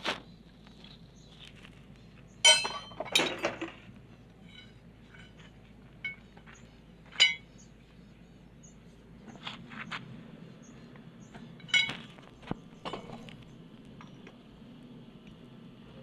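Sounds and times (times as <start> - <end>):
low steady hum: 0.0 - 16.0
gearbox metallic clinks: 2.4 - 3.8, 7.2 - 7.5.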